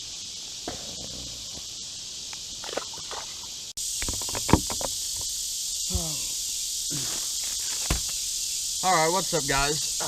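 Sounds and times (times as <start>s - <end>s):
insects buzzing: 0.0s - 10.0s.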